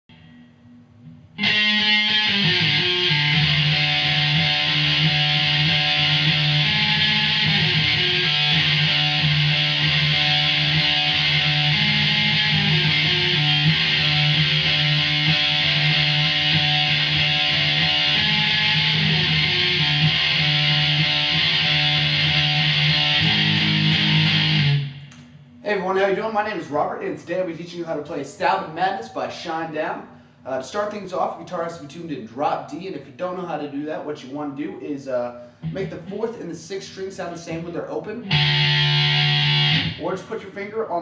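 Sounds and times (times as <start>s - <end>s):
electric guitar heavy rock riff: 1.4s - 25.1s, 38.3s - 40.2s.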